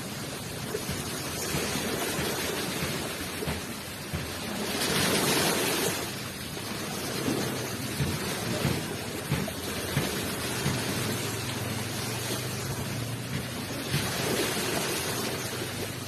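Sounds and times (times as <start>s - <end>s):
ocean waves washing onto shore: 0.0s - 16.0s.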